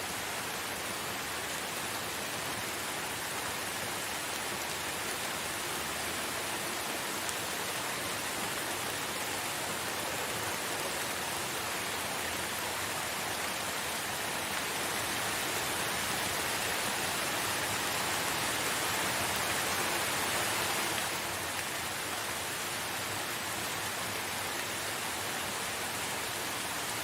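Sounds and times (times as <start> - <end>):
steady rain: 0.0 - 27.0.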